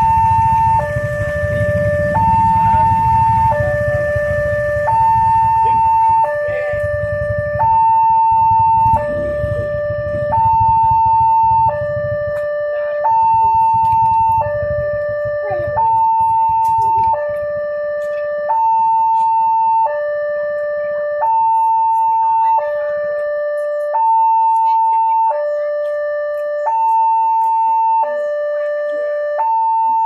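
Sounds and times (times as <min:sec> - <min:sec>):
low rumble: 0:00.0 - 0:18.4
hi-lo electronic siren: 0:00.0 - 0:30.0.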